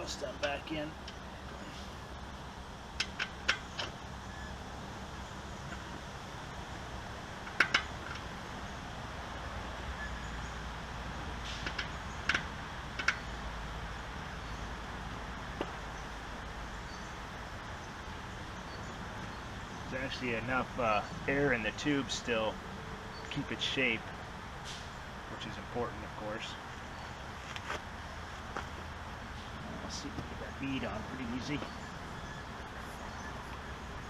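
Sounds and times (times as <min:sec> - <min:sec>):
steady low hum: 0:00.0 - 0:34.0
clicks and taps handling bike tire: 0:03.0 - 0:04.0, 0:07.4 - 0:08.3, 0:11.6 - 0:13.3.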